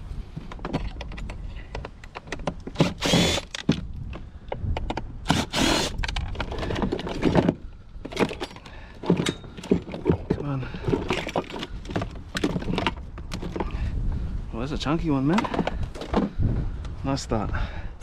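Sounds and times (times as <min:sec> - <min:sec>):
wind rumble on microphone: 0:00.0 - 0:18.0
junk clattering and knocking: 0:00.4 - 0:13.8.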